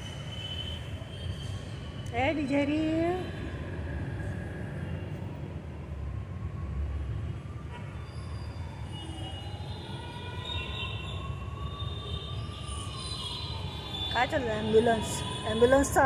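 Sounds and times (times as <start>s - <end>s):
ambulance siren wailing: 6.0s - 16.0s.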